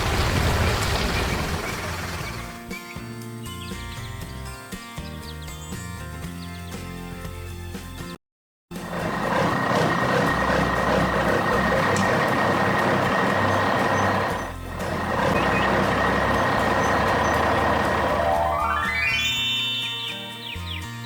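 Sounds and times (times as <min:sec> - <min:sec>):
construction vehicle engine with whine: 0:00.0 - 0:02.6, 0:08.7 - 0:19.4.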